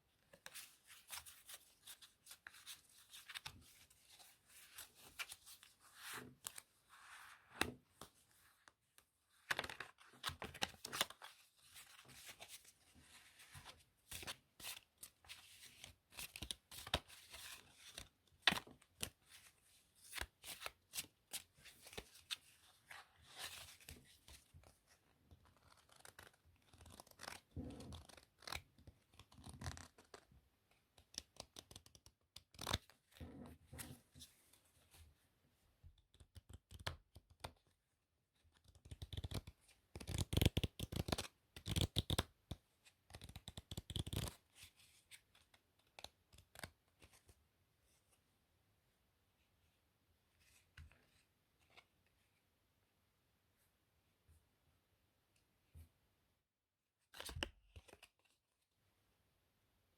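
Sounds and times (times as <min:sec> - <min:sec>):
playing cards clicking and rustling: 0:39.0 - 0:42.2.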